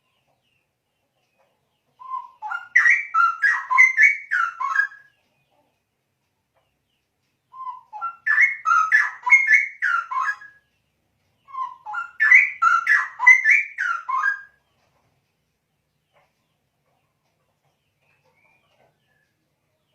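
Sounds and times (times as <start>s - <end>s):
bird singing warbling phrases: 1.9s - 5.2s, 7.4s - 14.6s.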